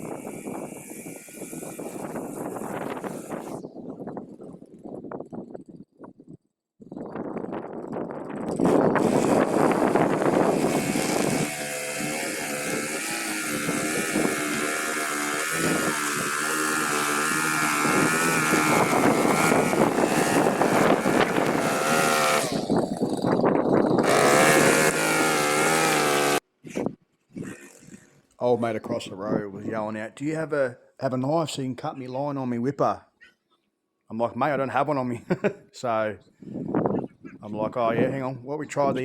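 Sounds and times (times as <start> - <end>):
small petrol engine running: 8.3 - 26.4.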